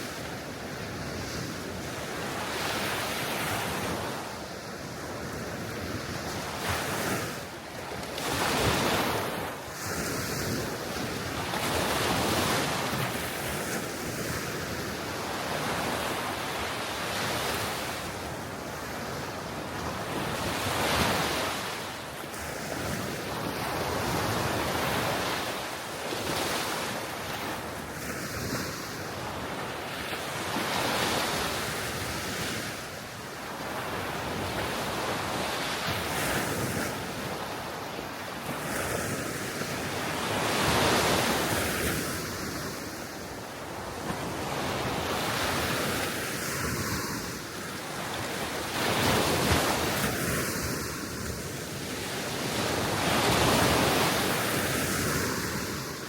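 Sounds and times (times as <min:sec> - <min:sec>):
wind noise on microphone: 0:00.0 - 0:25.5
waves washing on shore: 0:00.0 - 0:56.0
wind: 0:00.0 - 0:56.0.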